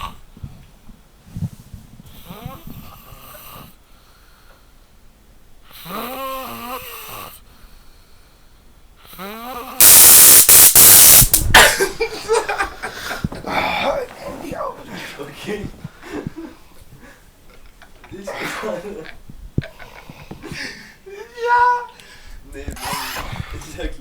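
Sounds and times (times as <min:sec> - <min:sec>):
extremely loud noise bursts: 0:09.8 - 0:11.9.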